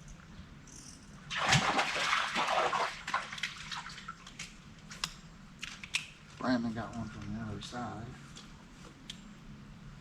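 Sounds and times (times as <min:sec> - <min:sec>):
creek water splashing: 0:01.3 - 0:04.4.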